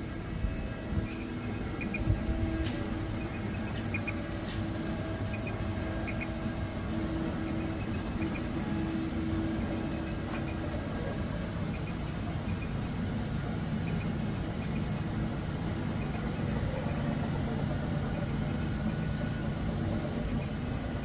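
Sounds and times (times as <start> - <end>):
steady hum: 0.0 - 21.0
stepper motors whining: 0.0 - 21.0
small paired ticks: 1.0 - 4.7, 5.3 - 6.6, 7.3 - 8.8, 9.5 - 10.9, 11.6 - 13.0, 13.8 - 15.2, 15.9 - 21.0.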